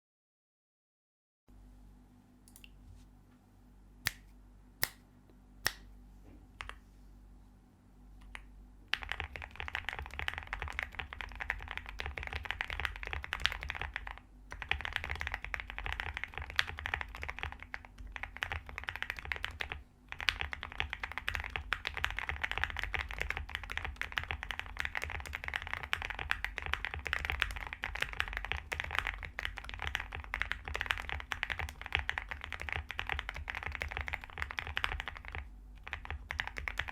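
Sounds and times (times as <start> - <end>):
mechanical keyboard typing: 8.2 - 36.9.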